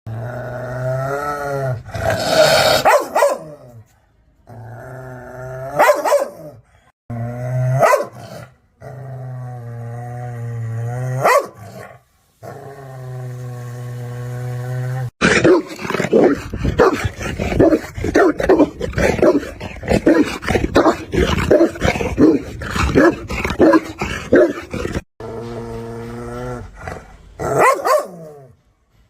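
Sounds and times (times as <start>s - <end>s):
dog barking sharply: 2.8s - 3.5s, 5.8s - 6.4s
dog growling: 12.4s - 27.6s.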